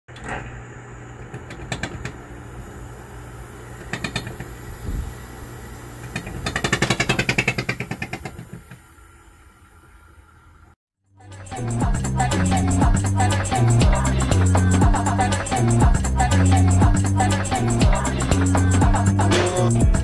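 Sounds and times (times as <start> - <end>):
air conditioner humming: 0.1 - 10.7
fast vibration rattling: 3.4 - 8.6.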